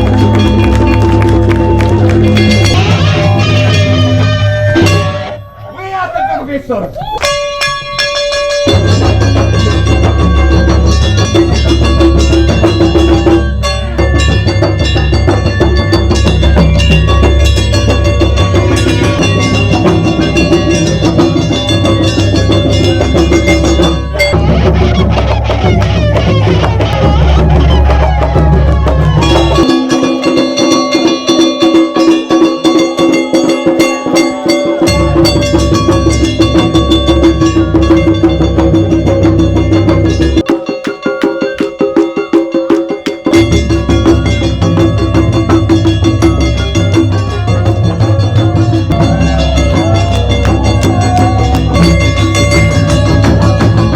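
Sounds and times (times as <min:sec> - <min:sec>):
taiko drums playing: 0:00.0 - 0:05.7, 0:07.0 - 0:53.9
held melodic notes: 0:07.2 - 0:42.2, 0:42.9 - 0:53.9.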